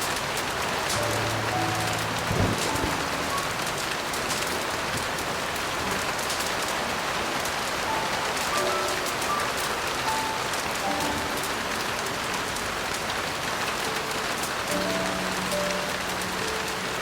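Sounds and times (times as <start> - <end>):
heavy rain falling: 0.0 - 17.0
soft piano notes: 0.0 - 17.0.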